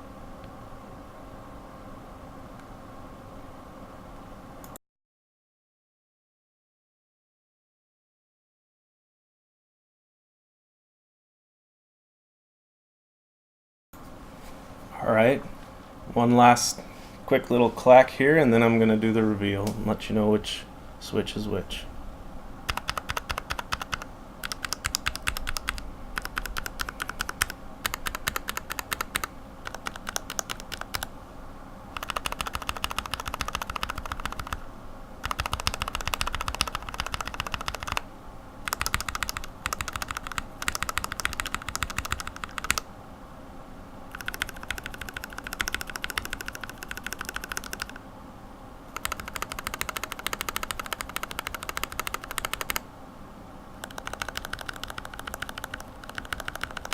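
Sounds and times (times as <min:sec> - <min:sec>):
mechanical keyboard switches clacking: 0:44.1 - 0:48.0, 0:49.0 - 0:52.8, 0:53.8 - 0:56.9.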